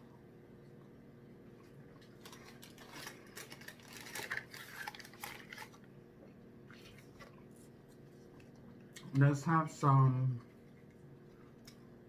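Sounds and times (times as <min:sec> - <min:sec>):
faint low hum: 0:00.0 - 0:12.0
food wrappers crackling: 0:01.8 - 0:05.9.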